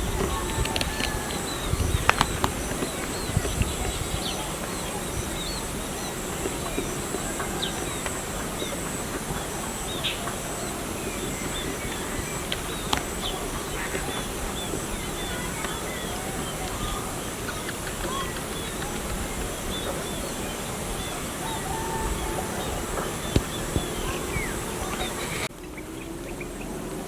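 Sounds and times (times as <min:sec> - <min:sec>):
small birds chirping: 0:00.0 - 0:27.0.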